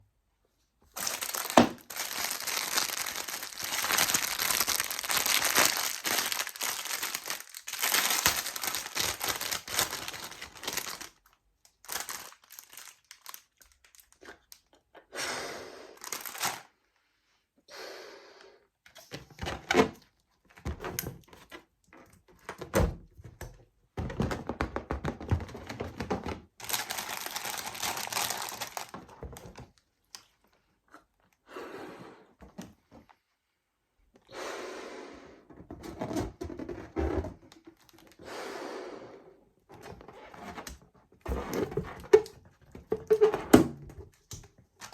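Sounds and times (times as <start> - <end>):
plastic wrapping crackling: 0.9 - 14.5, 16.0 - 16.7, 26.6 - 30.4, 39.8 - 44.9.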